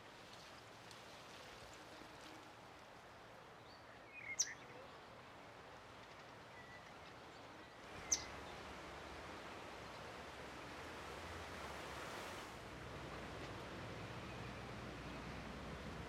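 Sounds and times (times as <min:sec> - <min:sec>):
faint outdoor hiss: 0:00.0 - 0:16.0.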